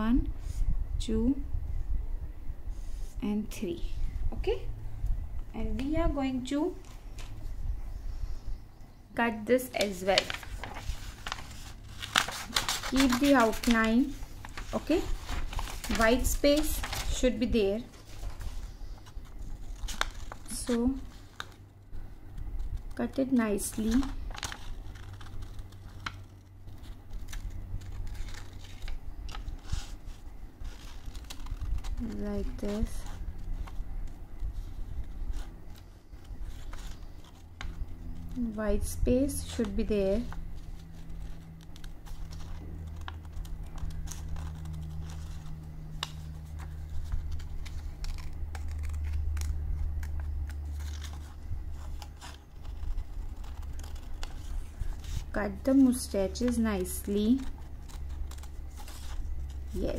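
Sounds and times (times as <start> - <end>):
low hum: 0.0 - 59.9
scissors cutting paper: 9.7 - 17.6, 19.7 - 21.6, 22.6 - 30.0, 30.6 - 34.2, 35.0 - 59.9.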